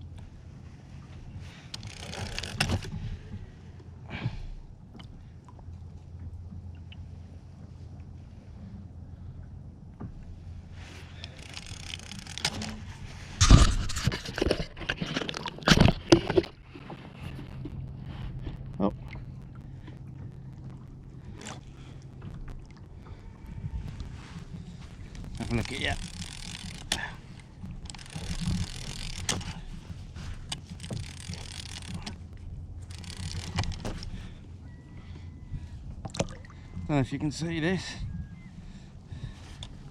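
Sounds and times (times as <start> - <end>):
steady low rumble: 0.0 - 39.9
fishing tackle rattling: 1.7 - 3.0, 11.1 - 18.0, 24.4 - 34.3.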